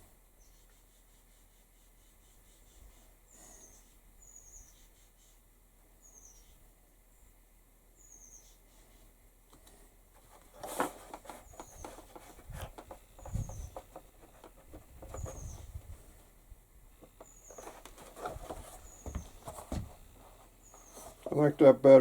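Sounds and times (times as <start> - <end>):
faint high chirp: 3.4 - 4.9, 6.0 - 6.6, 8.0 - 8.6
taps and rustles of leather: 10.4 - 15.6, 17.0 - 21.4.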